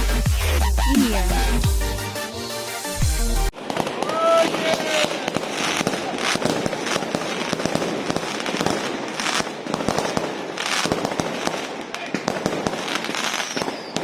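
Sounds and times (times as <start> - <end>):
fireworks hissing bursts: 0.0 - 14.0
fireworks crackling and banging: 3.5 - 14.0.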